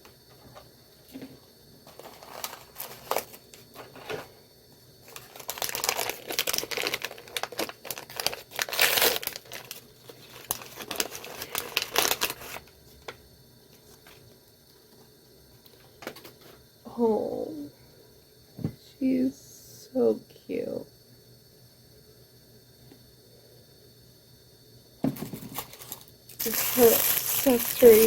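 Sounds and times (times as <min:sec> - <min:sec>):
packaging crinkling and tearing: 0:01.9 - 0:04.2, 0:05.0 - 0:13.2, 0:25.2 - 0:28.0.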